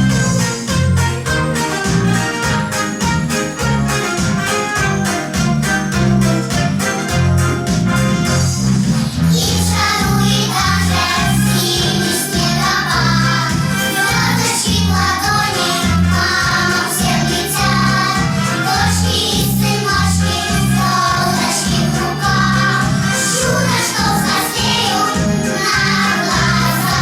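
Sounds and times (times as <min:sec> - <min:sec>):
bouncy bass line: 0:00.0 - 0:27.0
children's choir singing: 0:09.2 - 0:27.0.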